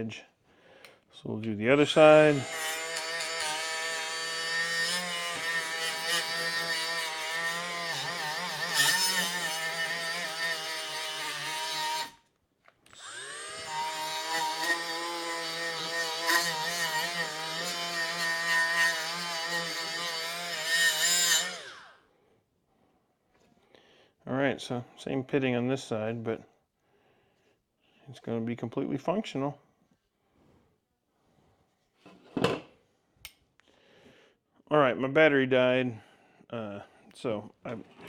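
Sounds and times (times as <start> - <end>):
die grinder whining: 1.9 - 12.2, 12.9 - 22.0.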